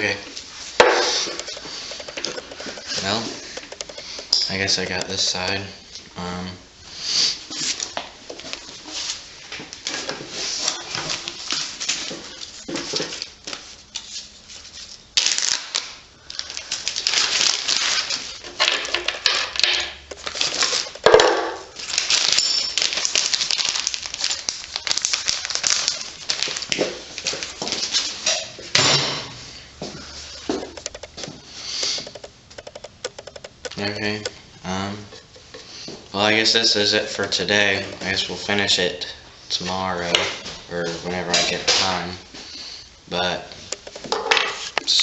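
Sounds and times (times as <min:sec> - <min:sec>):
metal tools and engine parts clinking: 0:01.1 - 0:05.0, 0:22.2 - 0:23.0.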